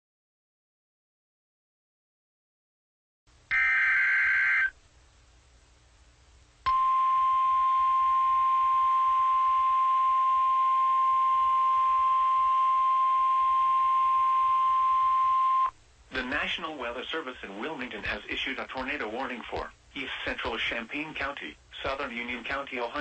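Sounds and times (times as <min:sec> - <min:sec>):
steady warning alarm tone: 0:03.5 - 0:04.7, 0:06.7 - 0:15.7.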